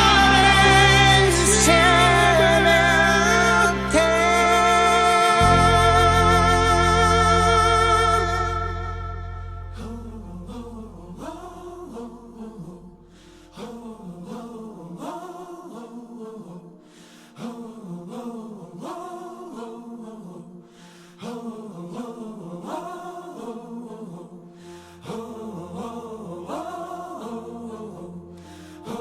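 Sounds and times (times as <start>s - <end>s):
low sustained drone: 0.0s - 12.5s
wordless chant-like vocals: 0.0s - 29.0s.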